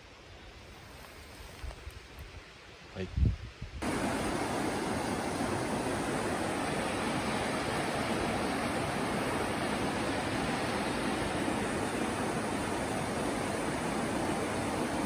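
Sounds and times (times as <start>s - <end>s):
stream rushing: 3.8s - 15.0s.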